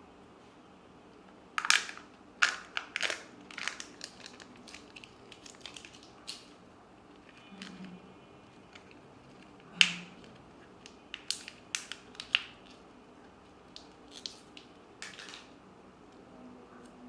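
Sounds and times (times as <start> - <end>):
wrapper crackling: 1.6 - 6.6, 7.2 - 12.8, 13.7 - 15.5.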